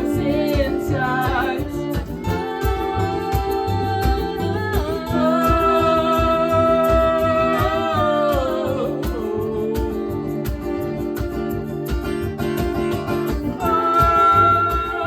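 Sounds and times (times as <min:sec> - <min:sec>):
acoustic guitars strumming: 0:00.0 - 0:15.0
steady percussion beat: 0:00.0 - 0:15.0.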